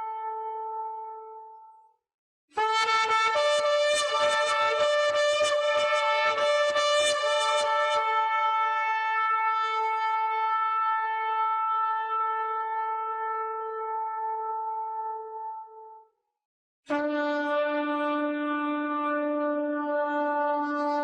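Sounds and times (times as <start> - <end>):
shofar blast: 16.9 - 19.9.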